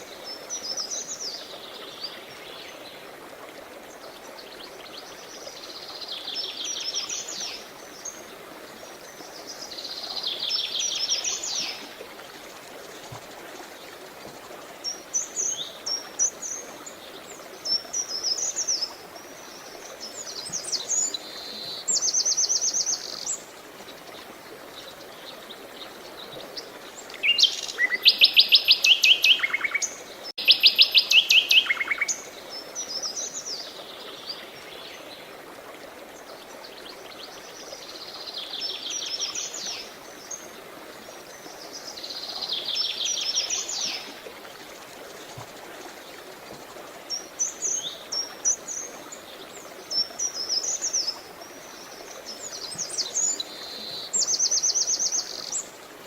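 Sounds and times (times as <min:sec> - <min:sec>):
faint running water: 0:00.0 - 0:56.0
songbirds trilling and chirping: 0:36.2 - 0:56.0.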